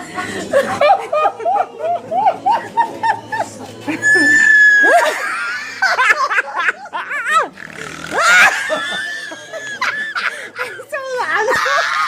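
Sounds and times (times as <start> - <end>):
woman's squeaky helium laughter: 3.9 - 6.4.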